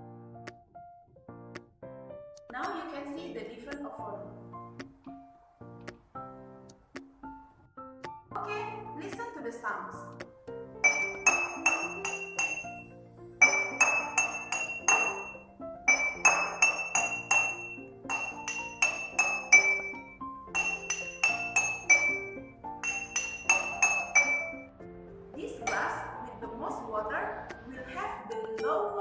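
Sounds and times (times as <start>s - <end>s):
background music: 0.0s - 29.0s
glass clinking: 10.8s - 24.7s.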